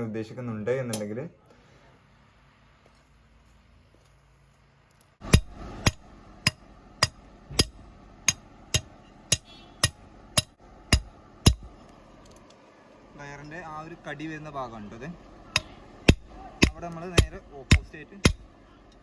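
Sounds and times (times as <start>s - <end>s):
hammer striking steel bar: 5.2s - 12.0s, 15.5s - 19.0s.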